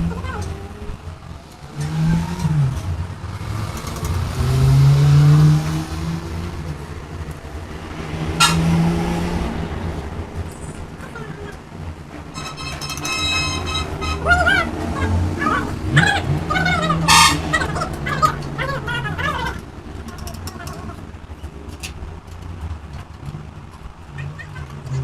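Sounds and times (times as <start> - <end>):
vehicle engine revving: 0.0 - 25.0.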